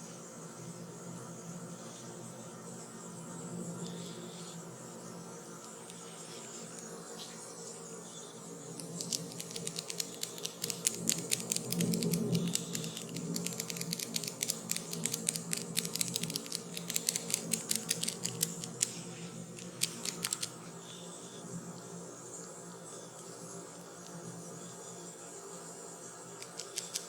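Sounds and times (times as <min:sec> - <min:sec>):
faint low hum: 0:00.0 - 0:27.0
crackling clicks from hair massage: 0:08.8 - 0:19.0, 0:19.6 - 0:20.6, 0:26.4 - 0:27.0.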